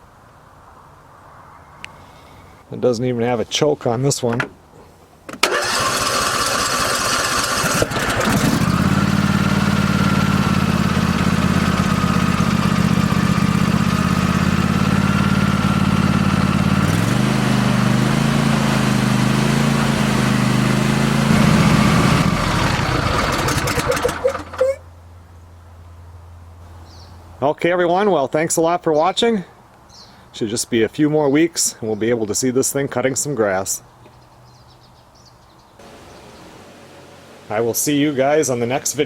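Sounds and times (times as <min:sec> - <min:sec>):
lawn mower engine running: 0:05.3 - 0:24.8, 0:35.8 - 0:39.0.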